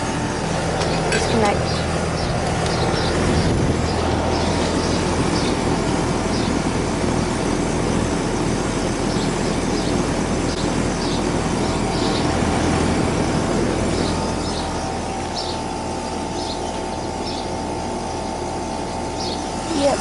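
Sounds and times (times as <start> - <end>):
air conditioner fan whoosh: 0.0 - 20.0
low electrical hum: 0.0 - 20.0.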